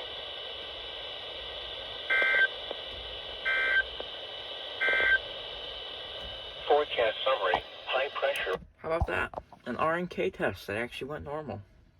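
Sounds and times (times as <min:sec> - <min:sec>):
radio hiss: 0:00.0 - 0:09.2.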